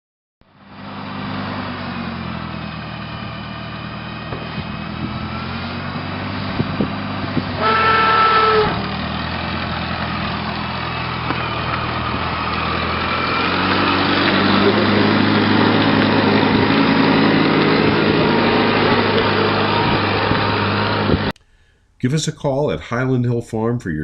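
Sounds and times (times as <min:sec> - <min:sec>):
engine starting and running: 0:00.5 - 0:22.2
horn-like tone: 0:07.6 - 0:08.9.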